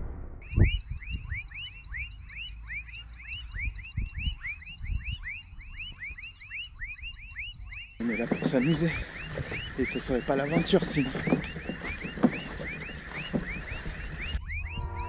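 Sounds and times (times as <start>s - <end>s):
low thumps: 8.0s - 15.0s.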